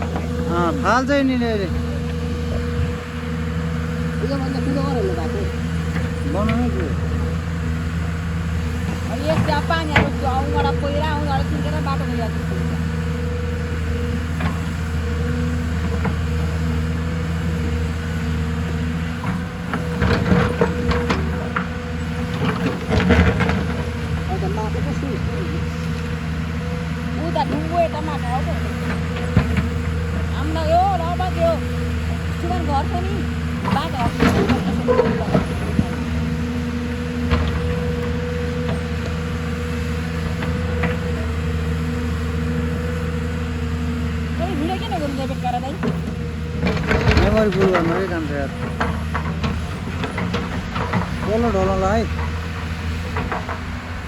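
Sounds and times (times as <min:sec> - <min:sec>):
excavator diesel engine running: 0:00.0 - 0:54.0
sharp knocks and clatter: 0:19.2 - 0:24.6, 0:28.8 - 0:30.4, 0:45.8 - 0:54.0.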